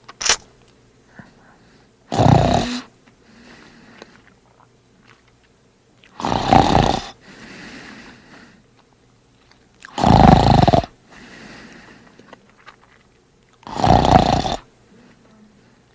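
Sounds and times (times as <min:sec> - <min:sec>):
man snoring loudly: 0:02.1 - 0:02.9, 0:06.2 - 0:07.2, 0:09.9 - 0:11.0, 0:13.6 - 0:14.7.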